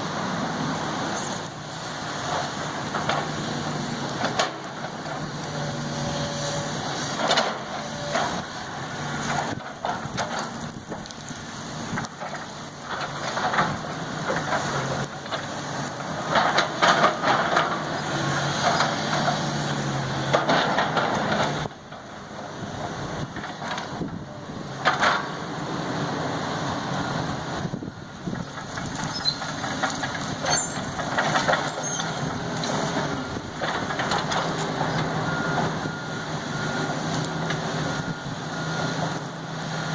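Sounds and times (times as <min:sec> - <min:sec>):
diesel engine running: 0:00.0 - 0:39.9
crunching and scraping: 0:01.3 - 0:22.1, 0:27.7 - 0:35.8.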